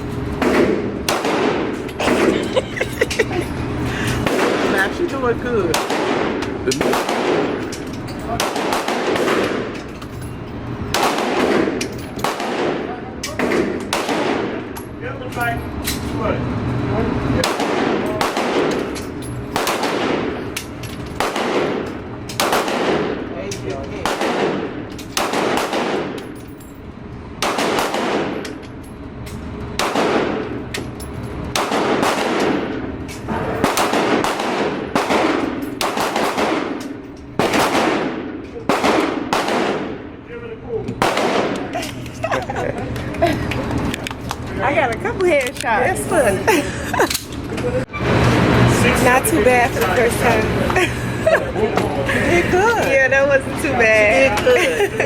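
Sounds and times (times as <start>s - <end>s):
gunshots with echo: 0.4s - 2.4s, 4.2s - 4.8s, 5.7s - 7.6s, 8.4s - 9.7s, 10.9s - 14.7s, 17.4s - 19.0s, 19.6s - 20.4s, 21.2s - 23.3s, 24.0s - 26.2s, 27.4s - 28.4s, 29.8s - 30.6s, 31.5s - 36.8s, 37.4s - 40.2s, 41.0s - 41.7s.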